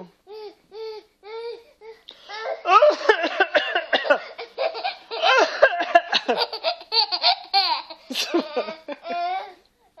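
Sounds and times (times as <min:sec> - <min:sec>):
small child laughing: 0:04.4 - 0:09.5.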